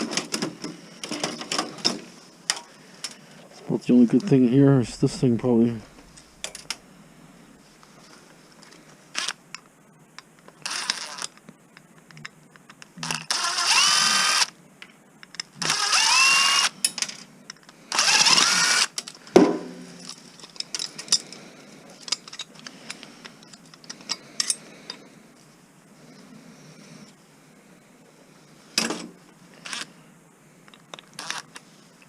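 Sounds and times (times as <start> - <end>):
cordless drill spinning: 9.1 - 9.4, 10.6 - 11.3, 13.3 - 14.5, 15.6 - 16.8, 17.9 - 19.0, 29.6 - 29.9, 31.2 - 31.5.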